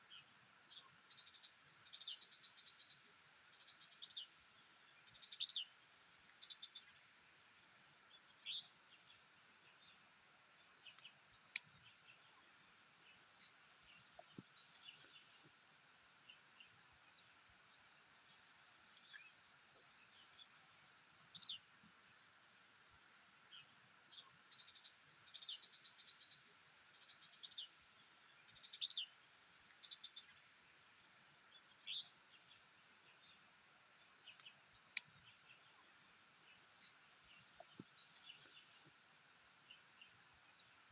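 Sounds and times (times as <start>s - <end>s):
insects droning: 0.0s - 40.9s.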